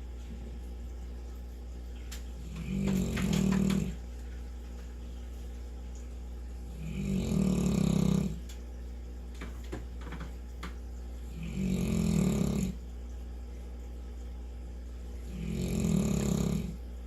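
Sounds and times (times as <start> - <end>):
dog snoring: 2.4 - 4.0, 6.7 - 8.4, 11.3 - 12.8, 15.3 - 16.8.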